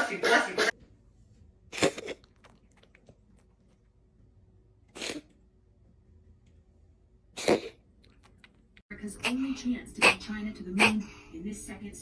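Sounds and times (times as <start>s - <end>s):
cat sneezing: 4.9s - 5.3s, 7.4s - 7.8s, 10.0s - 10.2s, 10.8s - 11.2s.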